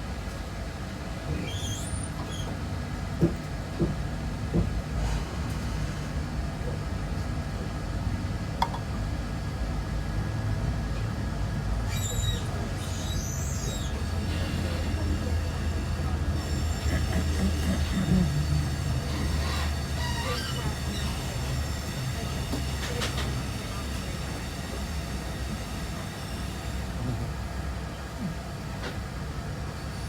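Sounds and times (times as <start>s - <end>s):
train rumble: 0.0s - 30.0s
faint high squeaks: 1.4s - 2.6s, 11.9s - 14.2s, 19.1s - 21.7s.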